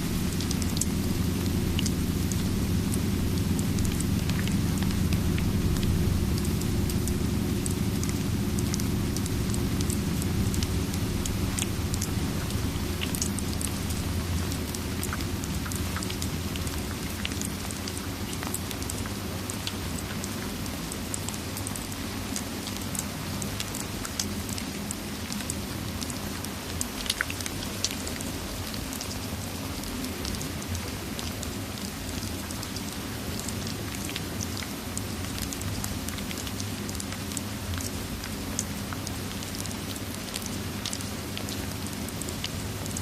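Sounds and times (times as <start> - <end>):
low rumble: 0.0 - 17.8
steady rain: 0.0 - 43.0.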